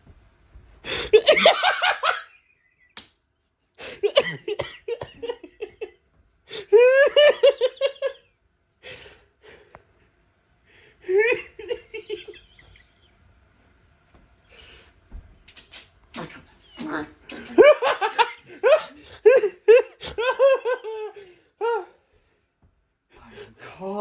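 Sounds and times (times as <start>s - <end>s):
person laughing hard: 0.9s - 2.4s, 6.5s - 8.2s, 11.0s - 13.1s, 16.6s - 21.9s.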